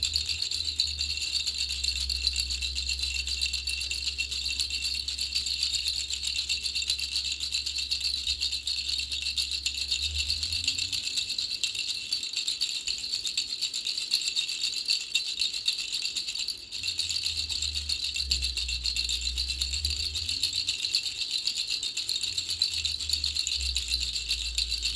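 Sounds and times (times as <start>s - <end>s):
baby rattle shaken: 0.0s - 24.9s.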